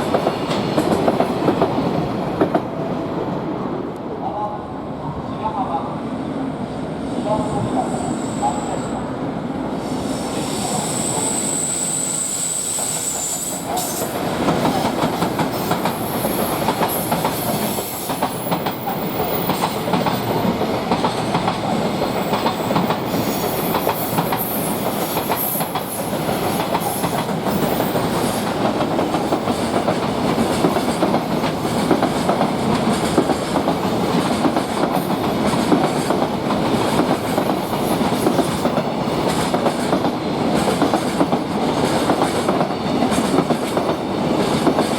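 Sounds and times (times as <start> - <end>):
train wheels clattering: 12.8 - 44.9.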